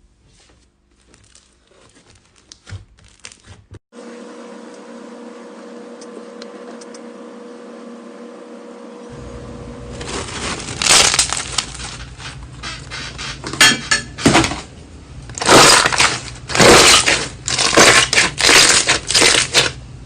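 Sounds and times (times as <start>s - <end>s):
slime crunching and crackling: 0.9s - 3.7s, 10.0s - 12.0s, 15.3s - 19.8s.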